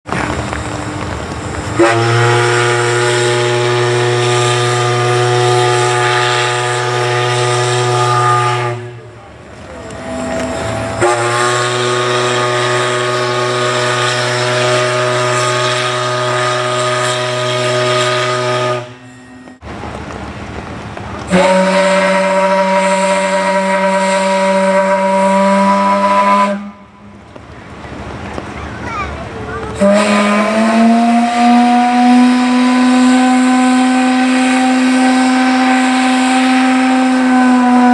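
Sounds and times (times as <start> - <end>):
steam whistle blasts: 1.8 - 9.1, 9.8 - 19.6, 21.3 - 27.0, 29.8 - 37.9
hissing steam: 27.9 - 37.9.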